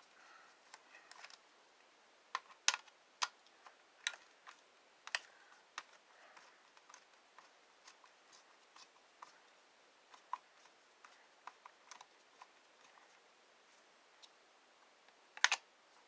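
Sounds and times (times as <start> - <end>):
screwdriver and plastic parts clicking: 0.7 - 1.4, 2.3 - 8.9, 10.1 - 13.0, 15.3 - 15.6.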